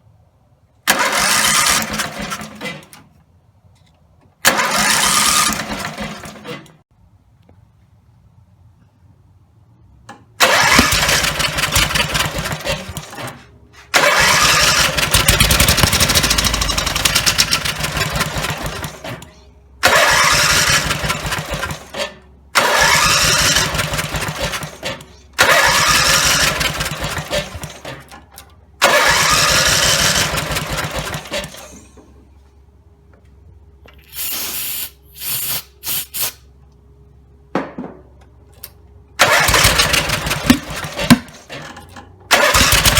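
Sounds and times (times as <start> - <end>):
mower engine cranking: 0.9 - 3.1, 4.4 - 6.7, 10.4 - 31.9, 38.6 - 42.9.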